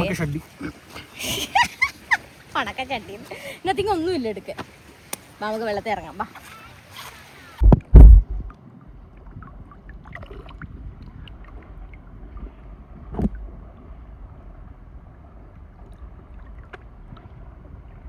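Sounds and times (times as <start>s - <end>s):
sharp knock: 7.6s - 8.5s
wind rumbling on microphone: 7.6s - 18.0s.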